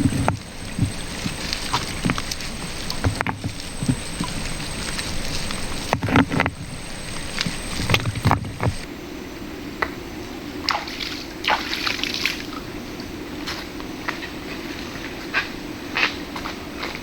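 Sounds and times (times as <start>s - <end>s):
small water splashes: 0.0s - 8.9s, 10.6s - 12.7s
shallow river water running: 0.0s - 17.0s.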